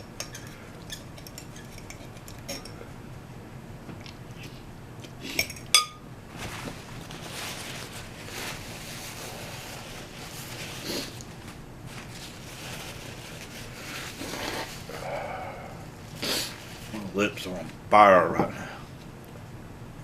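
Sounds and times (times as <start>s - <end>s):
metal utensil clinking on dish: 5.4s - 6.0s.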